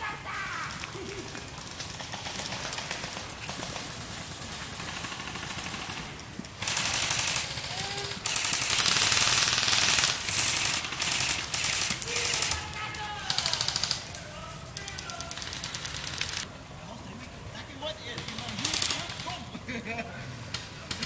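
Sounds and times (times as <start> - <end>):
airsoft gun firing full auto: 1.9 - 14.1.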